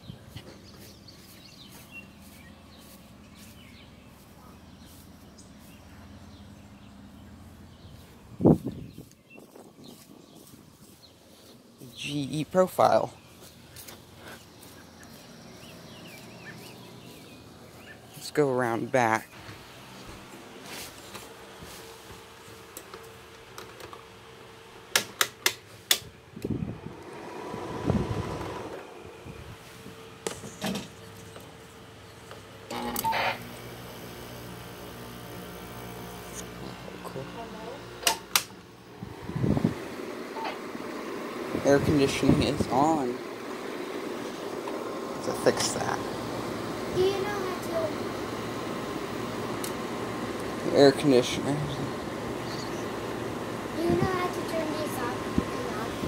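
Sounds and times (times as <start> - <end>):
air conditioner humming: 0.0 - 56.0
rough rumbling noise: 26.4 - 29.7
sharp clicks: 38.0 - 38.6.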